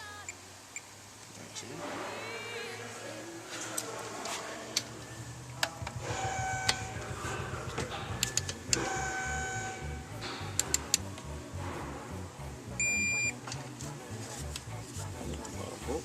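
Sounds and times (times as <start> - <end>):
sharp metallic clicks: 10.2 - 11.1.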